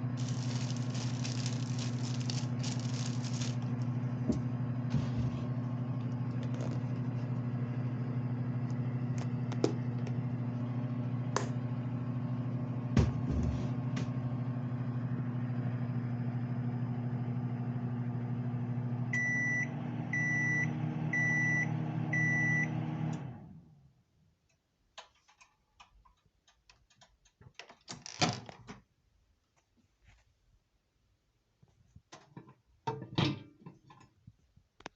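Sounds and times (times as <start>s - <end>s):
microwave oven humming: 0.0s - 24.1s
microwave beeping: 18.0s - 23.5s.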